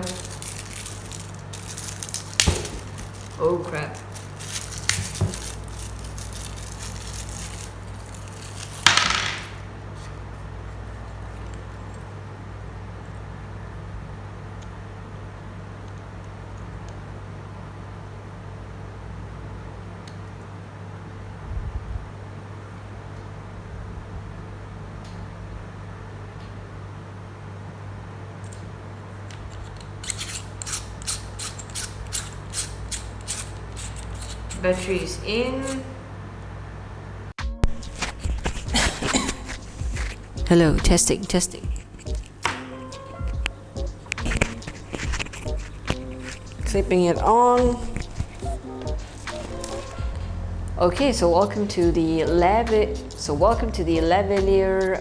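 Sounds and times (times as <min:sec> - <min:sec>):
plastic clicks and scrapes: 0:00.0 - 0:10.1, 0:29.3 - 0:35.9, 0:44.0 - 0:47.0, 0:47.6 - 0:50.2
hard object clattering: 0:00.0 - 0:10.2, 0:29.3 - 0:36.0, 0:37.6 - 0:41.0, 0:43.3 - 0:50.3
fan hum: 0:00.0 - 0:55.0.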